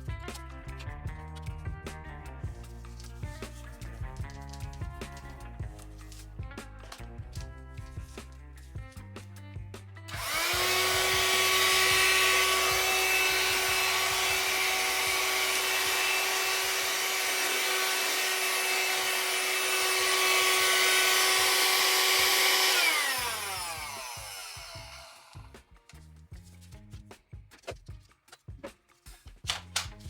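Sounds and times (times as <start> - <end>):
handheld vacuum motor whine: 10.1 - 25.5.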